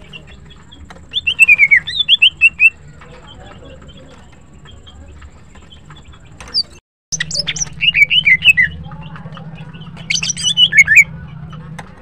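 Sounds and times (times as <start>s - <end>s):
bird chirping and whistling: 0.0s - 2.8s, 5.6s - 9.0s, 9.6s - 11.1s.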